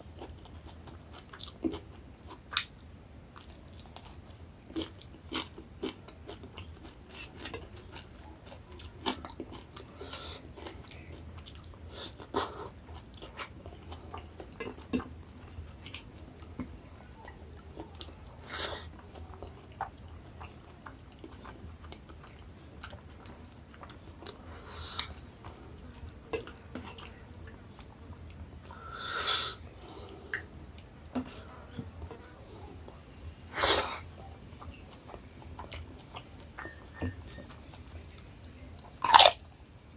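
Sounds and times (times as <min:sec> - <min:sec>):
chewing and mouth smacks: 0:00.2 - 0:25.7.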